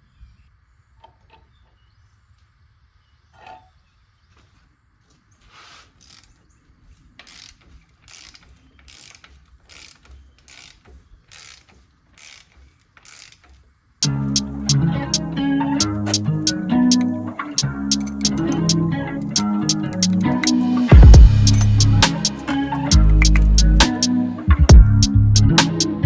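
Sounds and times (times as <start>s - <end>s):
hand ratchet clicking: 7.2s - 24.2s.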